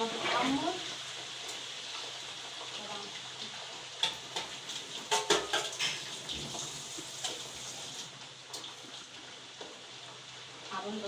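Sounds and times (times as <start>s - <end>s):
potatoes sizzling in hot oil: 0.0s - 11.0s
kitchen utensils clinking: 4.0s - 7.5s.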